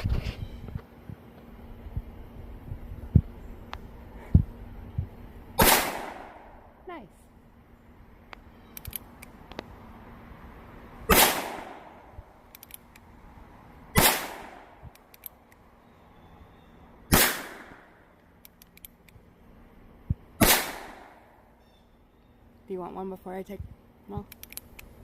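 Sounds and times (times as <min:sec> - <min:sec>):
revolver shots: 0:11.1 - 0:12.0.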